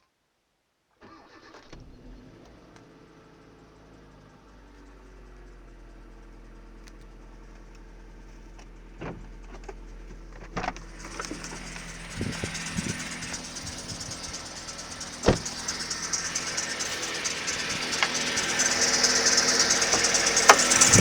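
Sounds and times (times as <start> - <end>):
car engine running: 2.5 - 21.0
pulley squeaking and creaking: 10.6 - 21.0
sharp knocks: 15.2 - 16.2.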